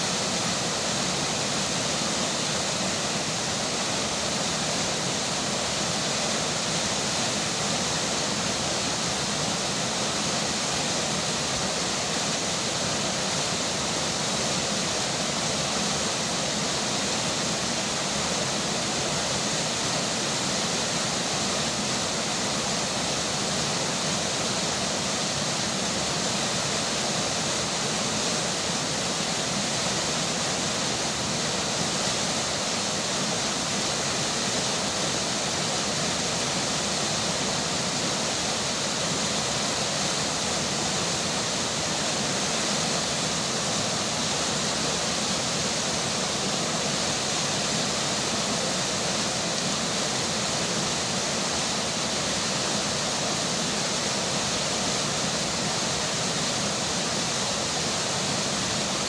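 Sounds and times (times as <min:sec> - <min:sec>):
rainfall: 0:00.0 - 0:59.0
river water rushing: 0:00.0 - 0:59.0.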